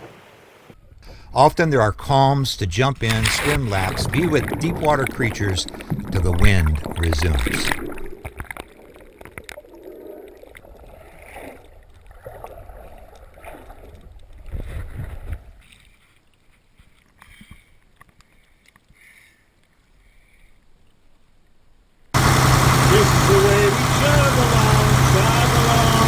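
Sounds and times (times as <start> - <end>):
water sloshing and splashing: 3.0 - 17.2.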